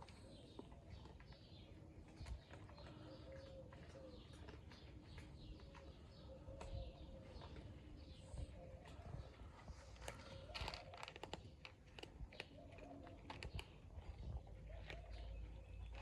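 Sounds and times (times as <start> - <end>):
cats chewing food: 0.0 - 16.0.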